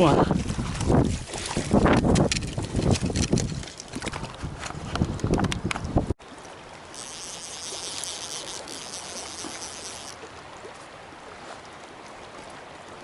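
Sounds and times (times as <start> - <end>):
wind noise on microphone: 0.0 - 6.2
river water rushing: 6.2 - 13.0.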